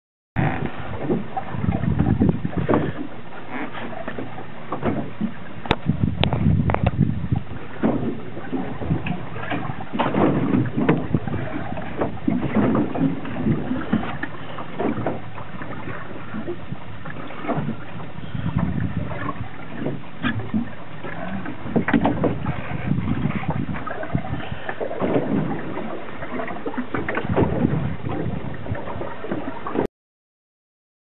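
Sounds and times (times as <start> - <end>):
water noise: 0.4 - 29.9
wind on microphone: 0.4 - 29.9.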